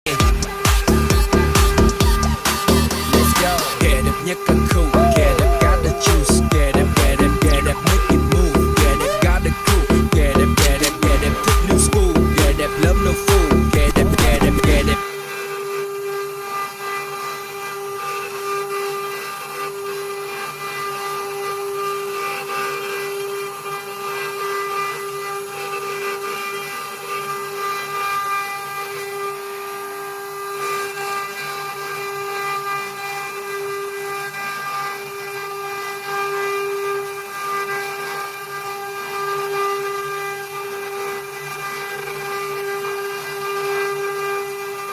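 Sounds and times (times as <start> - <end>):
hiss of cutting: 0.1 - 15.0
router spindle whining: 0.1 - 44.9.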